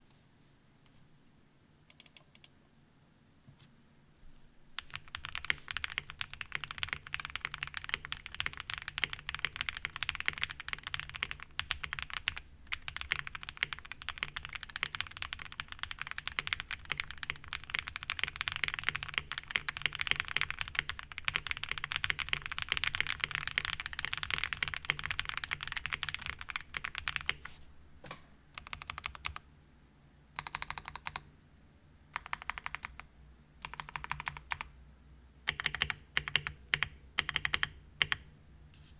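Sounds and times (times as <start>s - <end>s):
fast mechanical keyboard typing: 4.8s - 27.4s, 28.6s - 29.4s, 30.4s - 31.3s, 32.2s - 34.7s, 35.5s - 38.2s.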